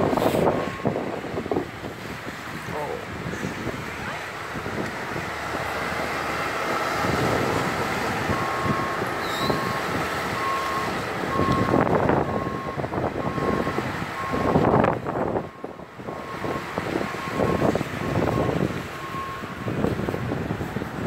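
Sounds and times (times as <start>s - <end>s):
engine and road rumble: 0.0s - 21.0s
reversing alarm beeping: 0.4s - 1.0s, 8.3s - 14.6s, 15.4s - 19.7s.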